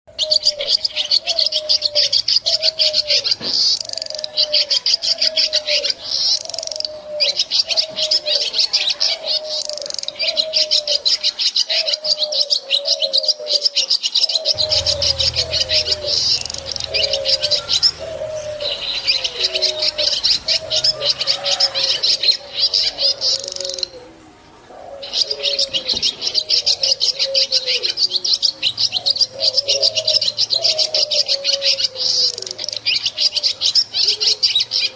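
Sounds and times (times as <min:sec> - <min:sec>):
low short falling note: 0:14.6 - 0:20.2
swiftlets twittering: 0:14.6 - 0:20.6.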